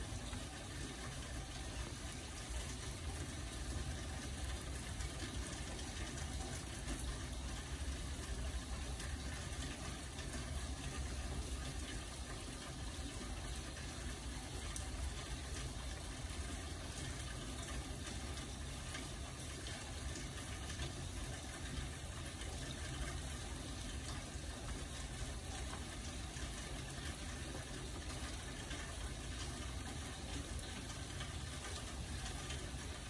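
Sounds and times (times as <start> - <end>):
steady rain hiss: 0.0 - 33.0.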